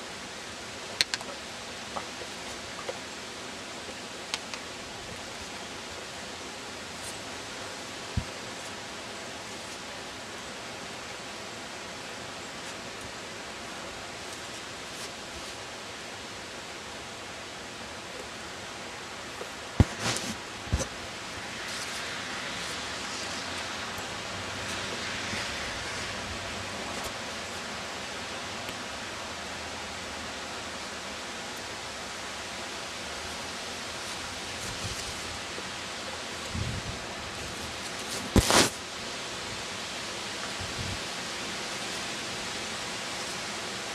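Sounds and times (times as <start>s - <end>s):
snowstorm hiss: 0.0s - 43.9s.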